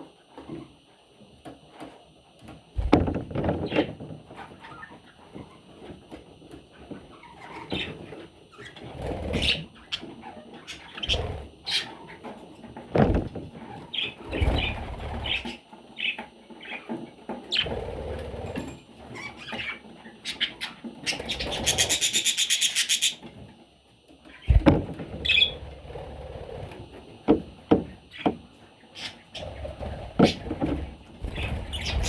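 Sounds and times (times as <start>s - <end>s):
bird chicks chirping: 19.1s - 23.5s, 24.2s - 25.7s, 28.0s - 32.0s
sharp knocks: 24.5s - 25.0s.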